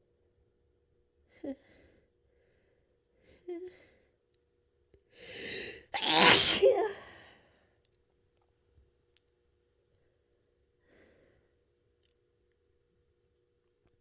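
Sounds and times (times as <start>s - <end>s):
woman drawing in breath: 5.2s - 5.9s
woman sneezing loudly: 5.4s - 7.1s.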